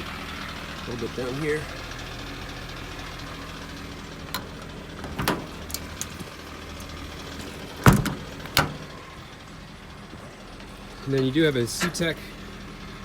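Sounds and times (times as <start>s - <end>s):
diesel engine idling: 0.0s - 13.0s
sharp clicks and knocks: 4.3s - 8.9s.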